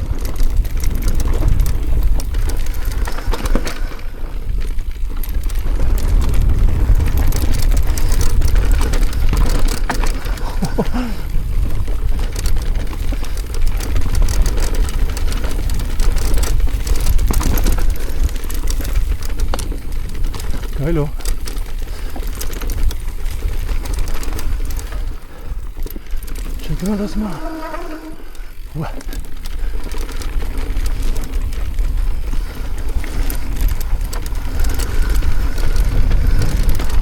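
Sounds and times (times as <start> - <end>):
bike tyres rattling over stones: 0.0 - 37.0
wind rumble on microphone: 0.0 - 37.0.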